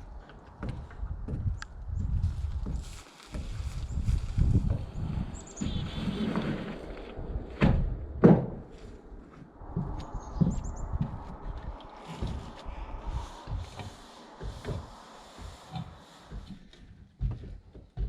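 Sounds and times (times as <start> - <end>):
footsteps: 0.0 - 7.9, 8.5 - 18.0
heavy thuds: 7.4 - 18.0.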